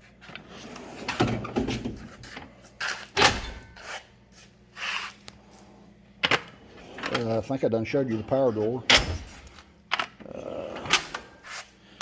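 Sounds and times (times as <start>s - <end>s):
tool chest drawers sliding: 6.2s - 7.4s.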